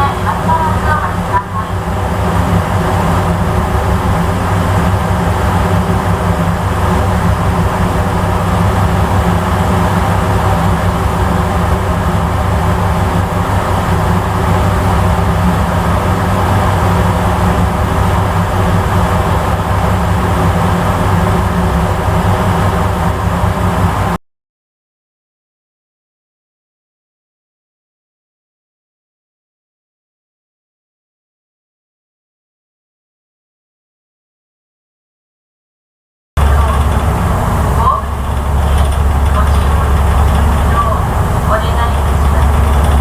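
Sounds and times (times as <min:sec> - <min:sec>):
ferry engine droning: 0:00.0 - 0:24.2, 0:36.4 - 0:43.0.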